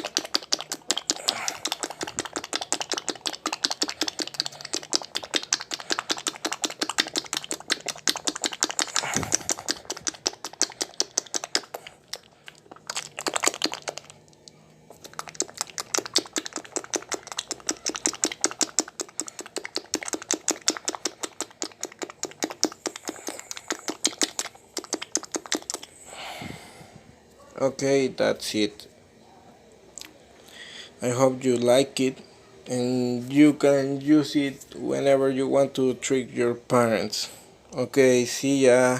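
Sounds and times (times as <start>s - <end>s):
mouth wet clicking: 0.0s - 26.0s, 30.0s - 30.2s.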